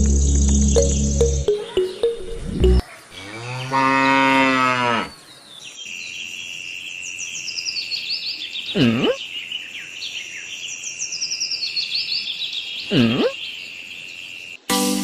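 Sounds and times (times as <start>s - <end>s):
steady high-pitched tone: 0.0s - 2.8s
birds chirping: 0.0s - 14.6s
cow mooing: 3.2s - 5.1s.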